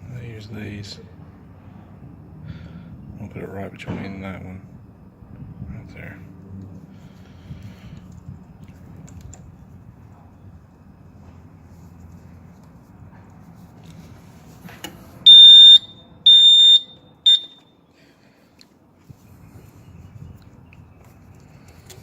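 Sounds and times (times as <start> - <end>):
fire alarm beeps: 15.2 - 17.7.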